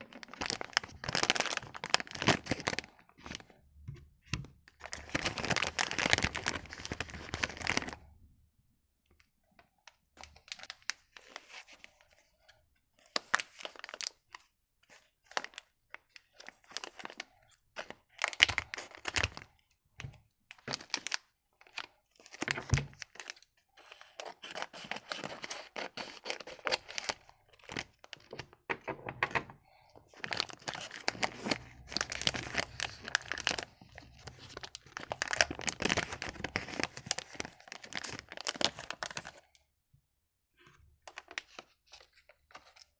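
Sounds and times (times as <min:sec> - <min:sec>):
wrappers being torn and crinkled: 0:00.1 - 0:02.8, 0:30.2 - 0:39.4.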